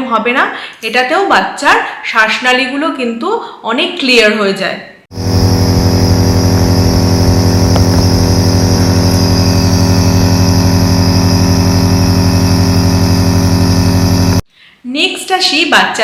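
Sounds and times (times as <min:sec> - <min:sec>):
nebulizer compressor buzzing hum: 0:05.1 - 0:14.4.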